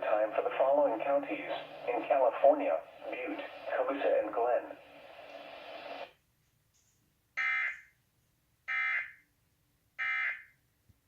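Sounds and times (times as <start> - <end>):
hissing noise: 0.6 - 6.1.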